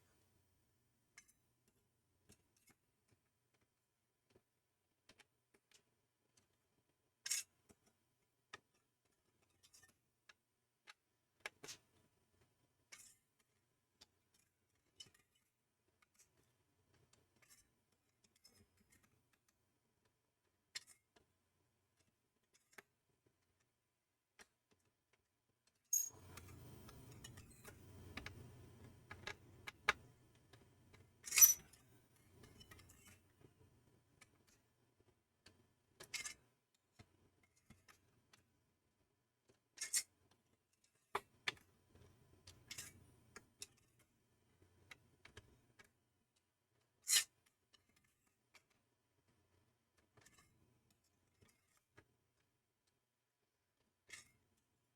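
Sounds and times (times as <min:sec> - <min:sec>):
screwdriver clicking and scraping: 0:26.0 - 0:28.4, 0:31.3 - 0:31.7.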